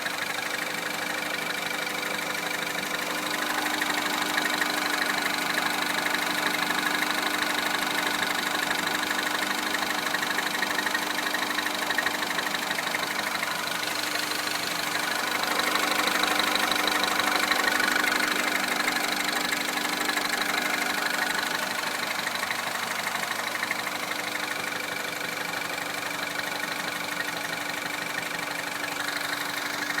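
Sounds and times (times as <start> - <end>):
car engine idling: 0.0 - 30.0.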